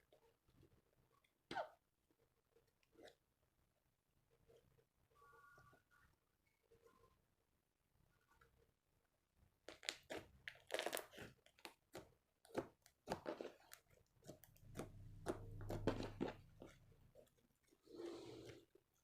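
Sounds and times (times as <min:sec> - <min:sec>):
slime popping and squelching: 0:09.7 - 0:17.2.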